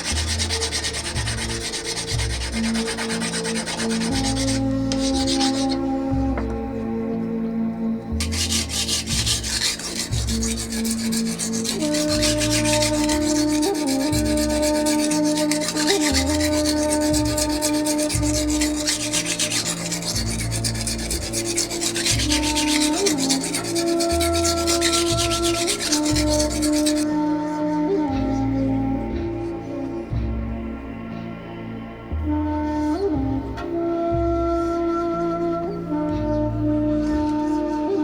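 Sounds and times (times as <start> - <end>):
knife scraping on whetstone: 0.0 - 5.9, 8.2 - 27.1
soft background music: 0.0 - 38.0.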